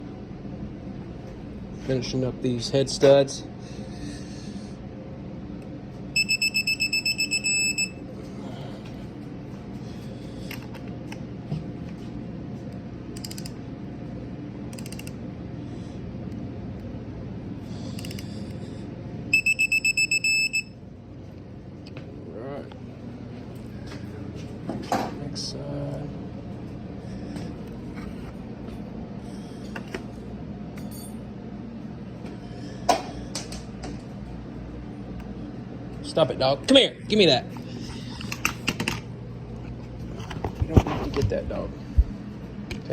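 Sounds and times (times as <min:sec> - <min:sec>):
steady low hum: 0:00.0 - 0:42.9
ratchet wrench clicking: 0:13.2 - 0:13.5, 0:14.7 - 0:15.1.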